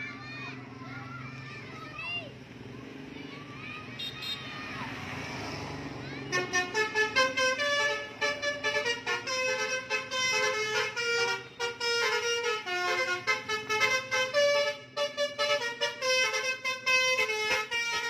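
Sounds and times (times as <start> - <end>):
bus musical horn playing tune: 6.3 - 18.0.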